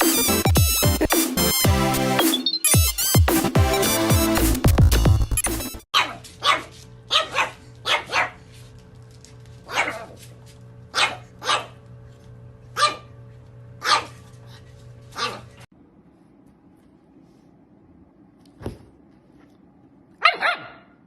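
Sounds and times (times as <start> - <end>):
dog barking: 6.0 - 8.4, 9.7 - 10.2, 10.9 - 11.8, 12.8 - 13.1, 13.8 - 14.2, 15.2 - 15.6, 20.2 - 21.0.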